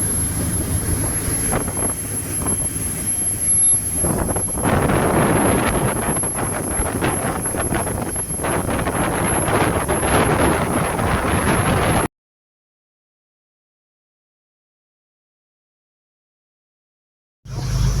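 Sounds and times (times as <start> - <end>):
boat engine running: 0.0 - 12.1, 17.5 - 18.0
wind buffeting microphone: 0.0 - 12.1.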